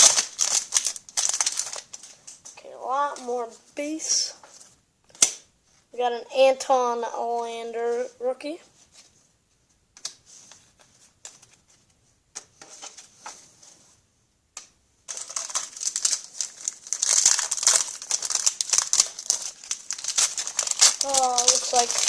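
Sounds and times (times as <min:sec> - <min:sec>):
foil wrapper crinkling: 0:00.0 - 0:02.4, 0:15.1 - 0:22.0
trading cards flicking and rustling: 0:00.0 - 0:02.6, 0:10.0 - 0:13.4, 0:15.1 - 0:22.0.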